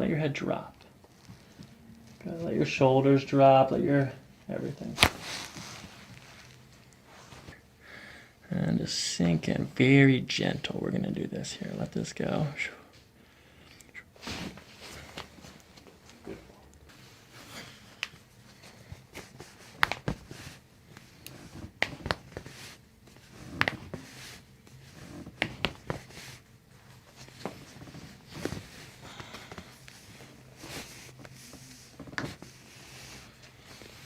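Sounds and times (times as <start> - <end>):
hands and clothing rustling: 4.4 - 7.6, 14.2 - 34.0.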